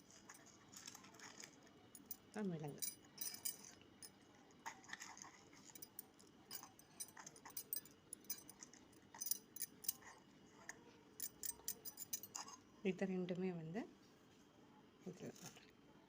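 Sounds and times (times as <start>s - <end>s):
spices clicking and rustling: 0.0s - 12.4s.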